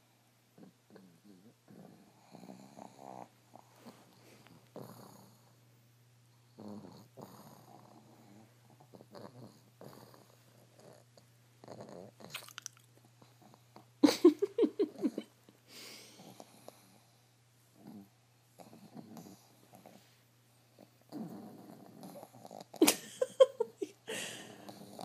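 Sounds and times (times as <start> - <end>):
dogs snoring: 0.5 - 5.7, 6.3 - 12.3, 13.1 - 13.9, 16.0 - 22.8, 24.2 - 25.0.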